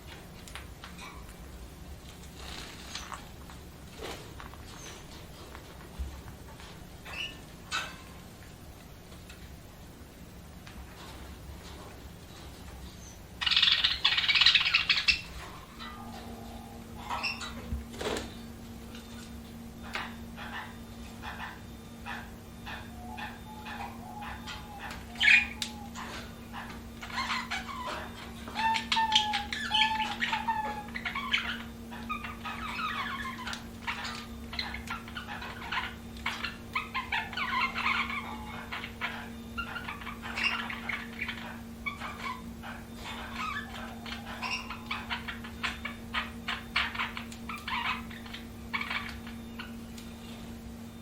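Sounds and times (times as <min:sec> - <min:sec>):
steady low hum: 0:00.0 - 0:51.0
budgerigars chattering: 0:13.1 - 0:17.7, 0:19.8 - 0:49.8.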